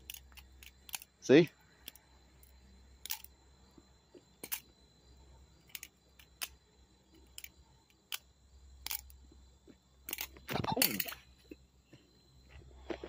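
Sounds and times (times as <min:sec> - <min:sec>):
butterfly knife handles clicking: 0:00.0 - 0:01.2, 0:01.8 - 0:03.4, 0:04.4 - 0:04.7, 0:05.6 - 0:09.2, 0:10.1 - 0:11.3.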